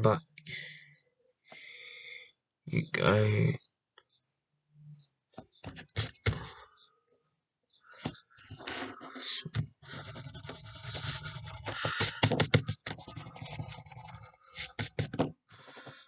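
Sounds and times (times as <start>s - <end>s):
pencil scratching on paper: 5.7s - 6.6s, 8.0s - 15.3s.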